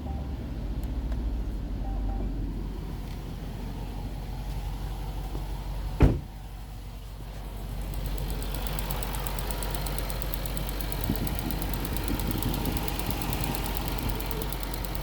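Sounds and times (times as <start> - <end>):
car engine idling: 0.0 - 15.0
sharp loud thump: 6.0 - 6.3.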